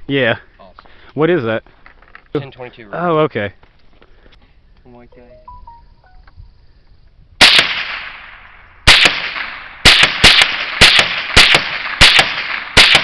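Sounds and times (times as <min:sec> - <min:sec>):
rifle shots with echo: 0:07.4 - 0:13.0.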